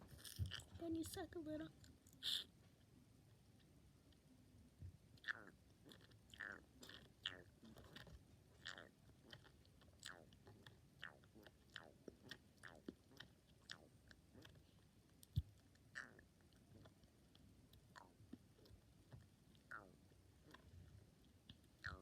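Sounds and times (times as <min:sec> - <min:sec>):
squeaky sucking through juice drink: 0:02.2 - 0:02.6.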